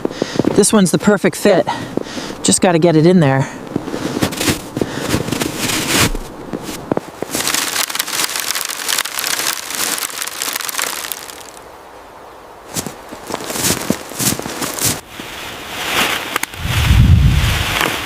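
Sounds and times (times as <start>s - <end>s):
wood crunching and snapping in snow: 3.7s - 11.6s, 12.7s - 15.0s, 15.8s - 18.0s.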